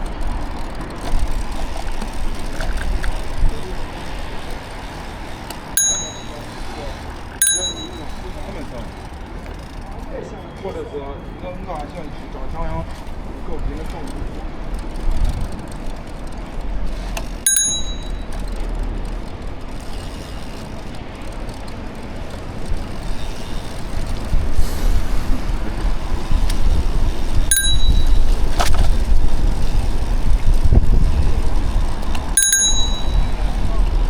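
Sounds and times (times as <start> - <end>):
bicycle bell ringing: 5.7 - 9.0, 17.4 - 18.5, 27.5 - 28.6, 32.4 - 33.9.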